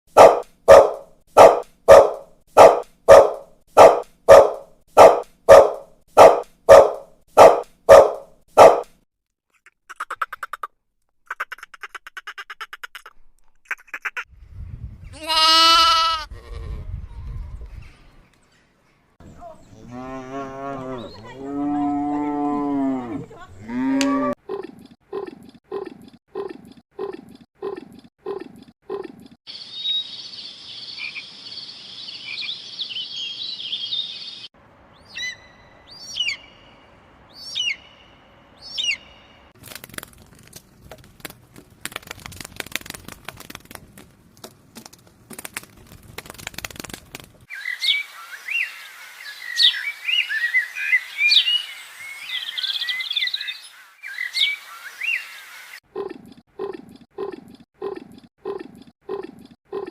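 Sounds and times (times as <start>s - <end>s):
high chattering bird calls: 37.4s - 39.4s.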